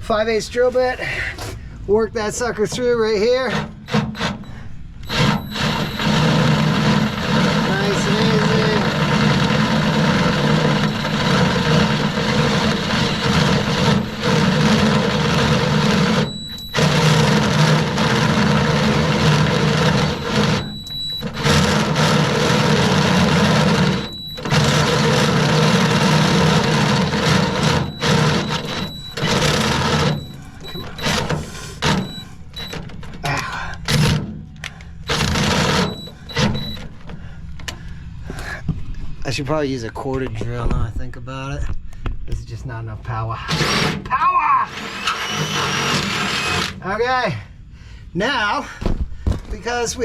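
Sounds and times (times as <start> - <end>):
cordless drill boring through steel: 5.1 - 32.1, 44.7 - 46.8.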